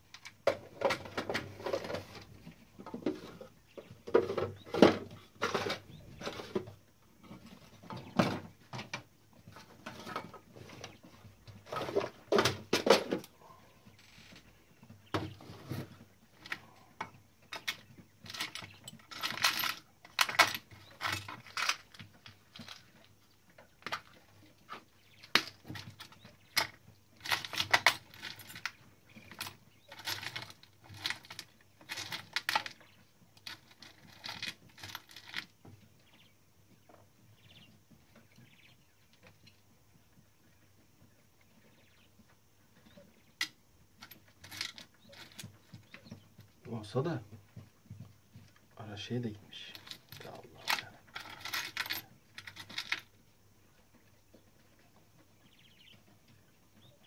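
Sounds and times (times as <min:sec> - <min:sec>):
metal tools being handled: 0:17.5 - 0:22.8, 0:49.5 - 0:53.1.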